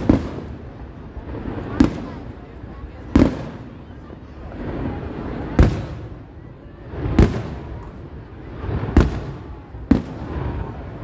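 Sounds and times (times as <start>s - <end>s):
fireworks bursting with rumble: 0.0s - 11.0s.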